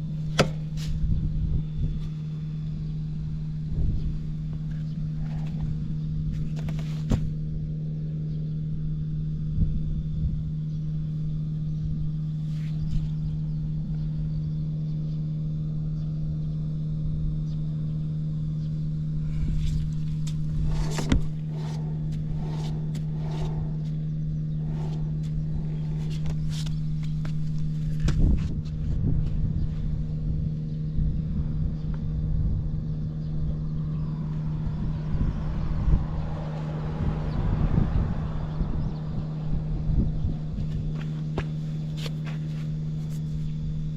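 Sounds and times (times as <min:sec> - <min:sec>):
scooter engine running: 0:19.2 - 0:30.4, 0:31.1 - 0:43.9.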